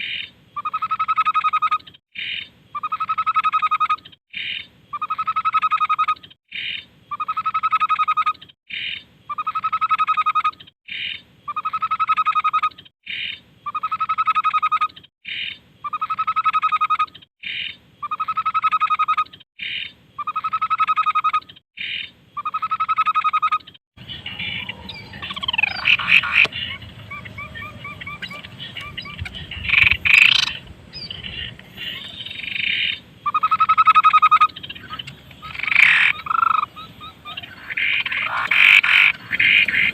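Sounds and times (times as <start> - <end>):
falling whistles and trills: 24.0 - 39.9.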